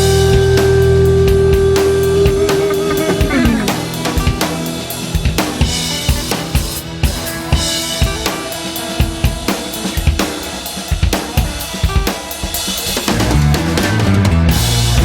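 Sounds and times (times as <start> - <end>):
held instrumental tones: 0.0 - 13.8
drum kit beat: 0.0 - 15.0.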